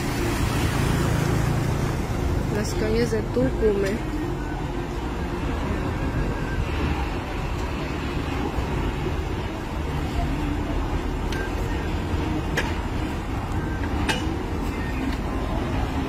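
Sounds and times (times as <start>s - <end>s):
motor vehicle running: 0.0s - 16.0s.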